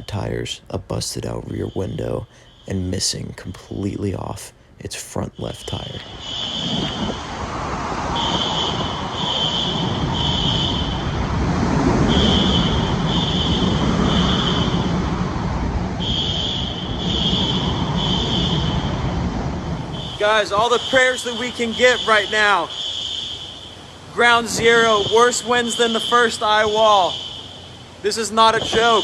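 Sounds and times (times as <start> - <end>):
electronic alarm beeps: 0.0 - 4.5, 5.1 - 7.3, 8.1 - 11.2, 12.0 - 15.1, 16.0 - 27.8, 28.5 - 29.0
wind roaring: 5.3 - 22.8, 23.8 - 27.1, 28.0 - 29.0.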